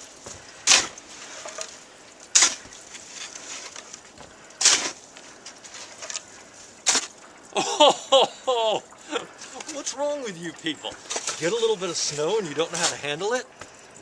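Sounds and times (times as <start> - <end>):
snow shovel scraping: 0.6 - 1.8, 2.4 - 4.0, 4.6 - 5.0, 5.6 - 7.2.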